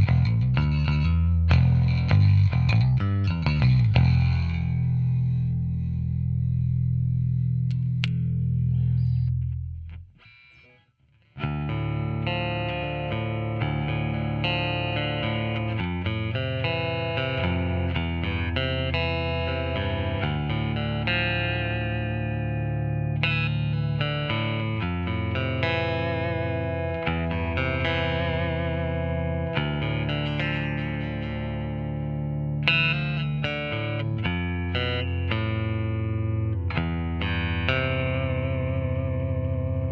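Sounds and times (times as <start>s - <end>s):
quickly picked bass notes: 0.0s - 10.2s.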